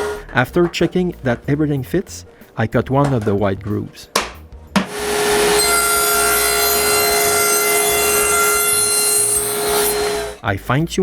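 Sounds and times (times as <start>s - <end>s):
power tool cutting hardwood: 4.8s - 10.4s.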